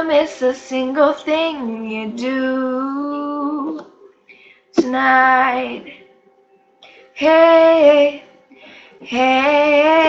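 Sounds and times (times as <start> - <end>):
woman singing a cappella: 0.0 - 4.0, 4.8 - 6.0, 6.9 - 8.3, 8.9 - 10.0.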